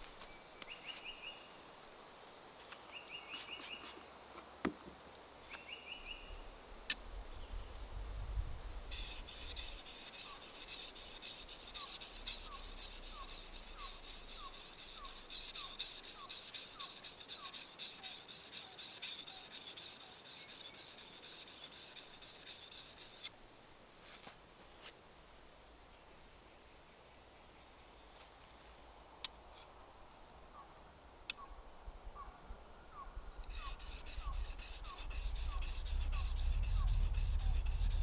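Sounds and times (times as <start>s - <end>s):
hand tool rasping: 8.9s - 23.3s, 33.4s - 38.0s.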